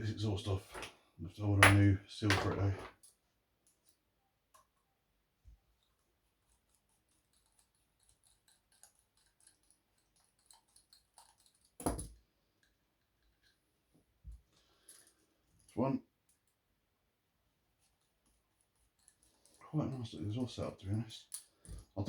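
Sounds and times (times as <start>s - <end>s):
faint small clicks and ticks: 2.9s - 4.9s, 5.5s - 16.7s, 17.8s - 22.0s.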